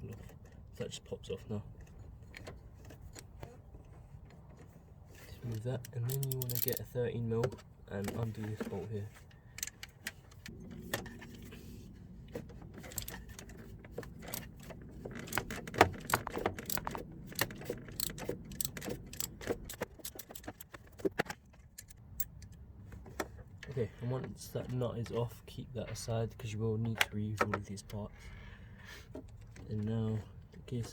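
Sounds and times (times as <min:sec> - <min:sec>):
spanner clicking on a nut: 0:05.8 - 0:06.9, 0:12.8 - 0:13.5, 0:14.2 - 0:20.8.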